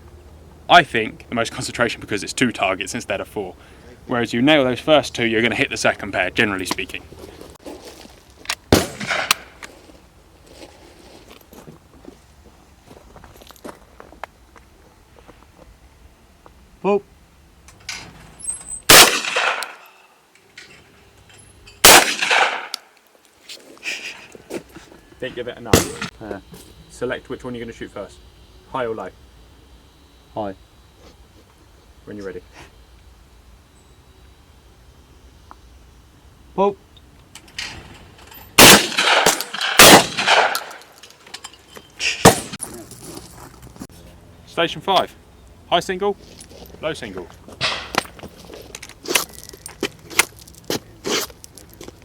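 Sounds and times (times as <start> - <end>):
sharp crack: 8.5 - 9.7, 18.9 - 20.0, 21.8 - 23.1, 25.7 - 26.1, 38.6 - 41.1, 42.0 - 42.7, 47.6 - 48.1
shotgun shots with echo: 8.7 - 9.5, 18.9 - 19.8, 21.8 - 22.8, 25.8 - 26.1, 38.6 - 40.8, 42.2 - 42.6.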